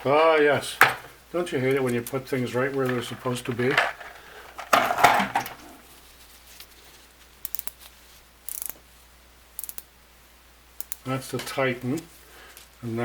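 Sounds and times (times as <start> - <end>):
metal parts clattering: 2.6 - 5.9
faint small clicks: 7.4 - 7.9, 9.6 - 9.9, 10.8 - 11.1.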